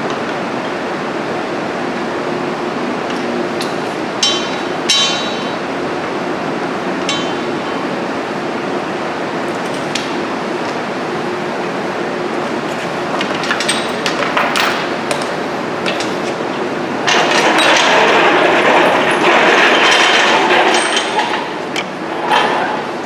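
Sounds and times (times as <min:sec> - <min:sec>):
workshop noise: 0:02.0 - 0:23.0
metal clinks and knocks: 0:04.2 - 0:05.6, 0:07.1 - 0:07.6.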